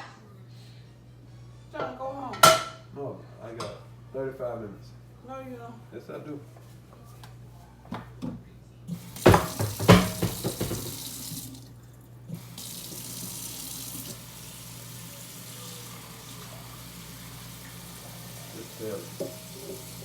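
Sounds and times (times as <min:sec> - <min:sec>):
tap water running into sink: 0:08.9 - 0:20.0.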